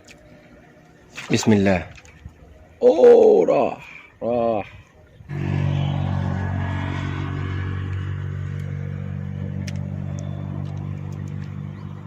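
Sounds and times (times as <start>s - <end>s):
engine humming: 5.3s - 12.0s.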